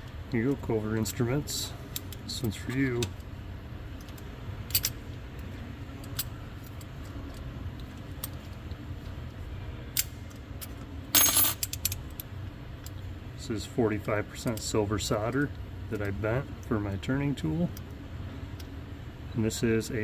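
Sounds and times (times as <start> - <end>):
metal tools clinking: 11.1 - 12.0.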